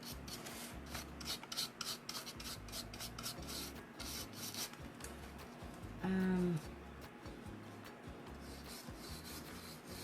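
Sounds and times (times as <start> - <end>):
paintbrush brushing paint: 0.0 - 4.8, 8.3 - 10.0.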